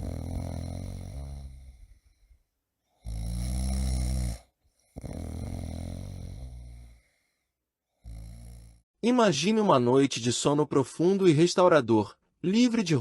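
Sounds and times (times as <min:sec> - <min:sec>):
person snoring: 0:00.0 - 0:02.4, 0:03.0 - 0:07.4, 0:08.0 - 0:08.8.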